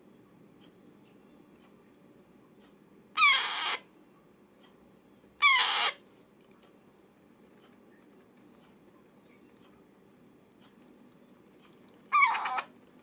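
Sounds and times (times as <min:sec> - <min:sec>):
parakeet squawks: 0:03.2 - 0:03.8, 0:05.4 - 0:06.0, 0:12.1 - 0:12.7.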